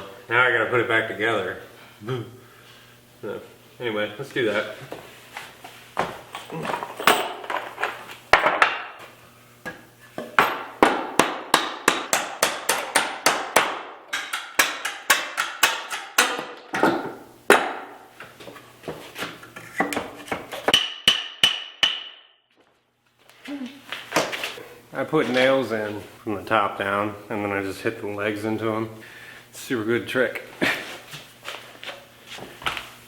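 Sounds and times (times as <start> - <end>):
hammer driving nails into wood: 10.5 - 16.9.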